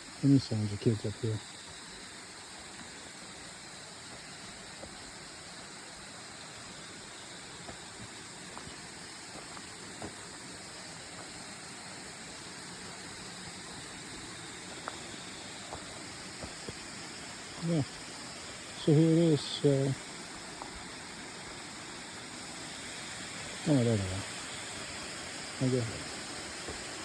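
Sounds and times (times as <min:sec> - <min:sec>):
waterfall rushing: 0:15.7 - 0:27.0.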